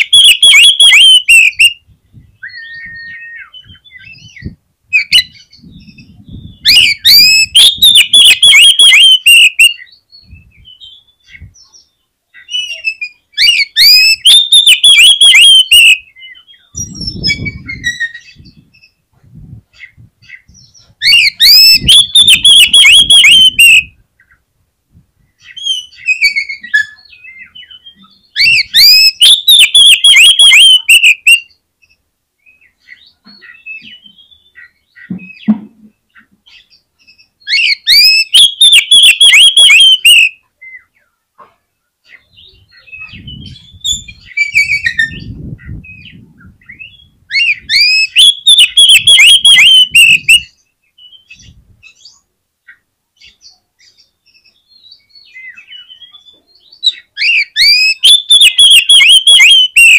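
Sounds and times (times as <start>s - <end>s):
bird whistled song: 0.0s - 19.0s, 20.3s - 23.9s, 25.4s - 35.5s, 36.5s - 40.9s, 42.3s - 52.2s, 53.2s - 59.9s
quiet bird calls: 25.3s - 59.9s.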